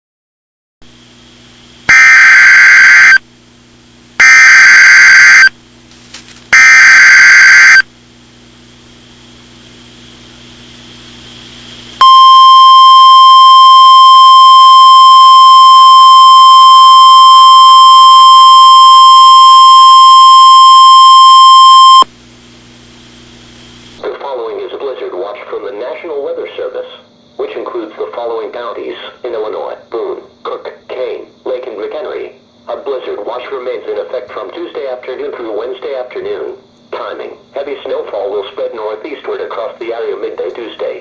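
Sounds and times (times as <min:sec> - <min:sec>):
digital data tone bursts: 0:01.9 - 0:03.2, 0:04.2 - 0:05.5, 0:06.6 - 0:07.8, 0:12.0 - 0:22.0
steady single-pitch attention tone: 0:12.0 - 0:22.1.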